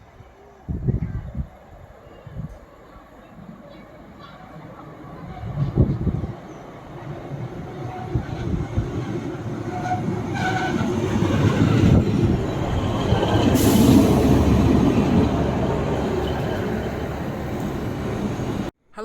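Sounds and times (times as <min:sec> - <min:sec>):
train passing: 0:00.0 - 0:18.7.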